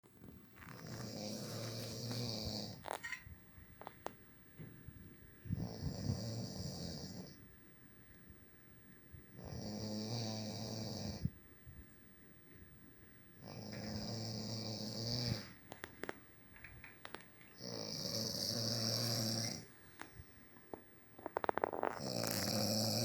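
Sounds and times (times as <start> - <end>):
man snoring: 0.8 - 2.8, 5.6 - 7.4, 9.4 - 11.3, 13.4 - 15.6, 17.6 - 19.6, 21.5 - 23.0.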